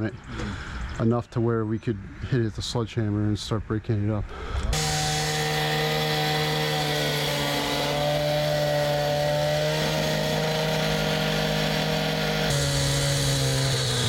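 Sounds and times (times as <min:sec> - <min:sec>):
cut-off saw grinding concrete: 0:04.7 - 0:14.0.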